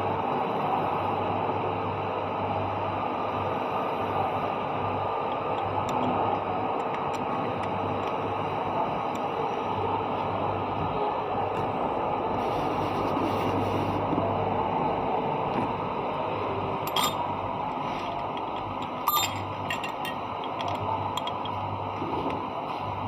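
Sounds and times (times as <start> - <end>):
mechanical hum: 0.0 - 23.0
sharp metallic clinks: 16.9 - 17.3, 18.8 - 21.5.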